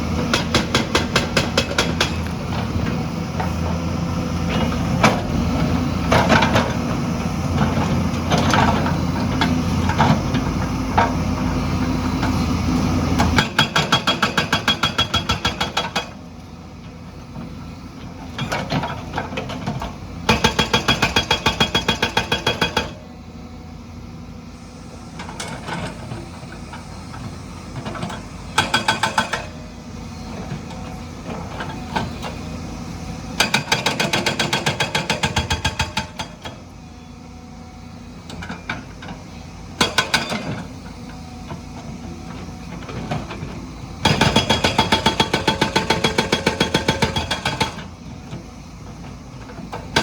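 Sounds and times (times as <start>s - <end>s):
hydraulic breaker hammering: 0.3s - 2.3s, 44.0s - 47.8s.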